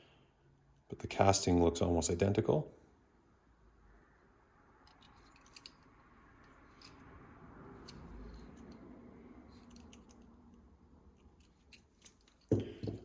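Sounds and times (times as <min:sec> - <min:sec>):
small metal parts clicking: 0:04.8 - 0:07.1, 0:09.5 - 0:13.0.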